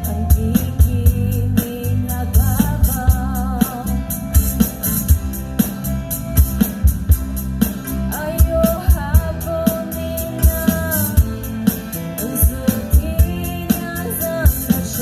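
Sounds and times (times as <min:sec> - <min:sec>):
guitar: 0:00.0 - 0:15.0
person singing: 0:08.1 - 0:15.0.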